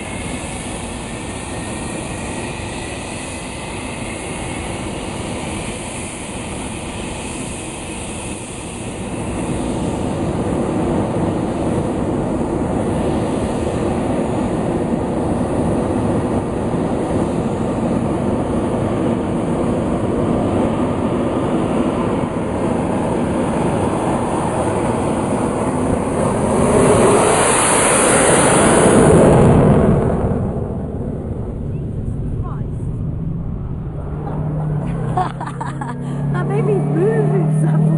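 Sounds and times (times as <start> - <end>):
jet engine roar: 0.0 - 37.9.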